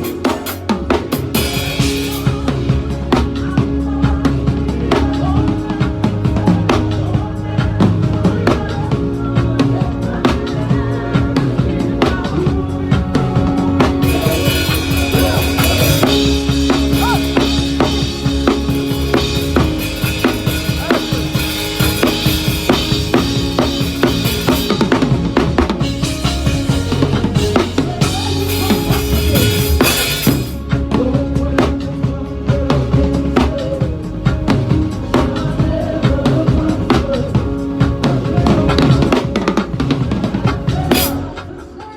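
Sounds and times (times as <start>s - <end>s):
drum kit groove: 0.0s - 41.9s
cymbals ringing: 1.3s - 2.6s, 14.0s - 30.6s
instruments holding pitched notes: 9.0s - 31.4s.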